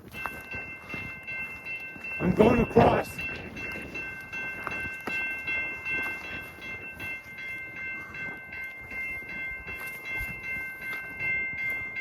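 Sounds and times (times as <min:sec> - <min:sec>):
railroad crossing bell ringing: 0:00.0 - 0:12.0.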